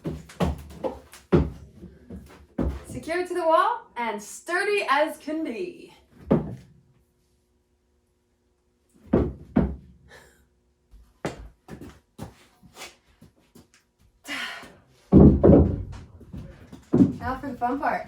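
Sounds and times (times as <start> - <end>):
heavy thuds: 15.1 - 17.8.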